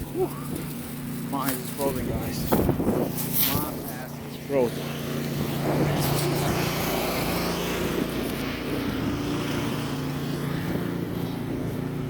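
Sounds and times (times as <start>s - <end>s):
street noise: 0.0s - 12.0s
vehicle engine running: 0.0s - 12.0s
wind hissing: 2.0s - 12.0s.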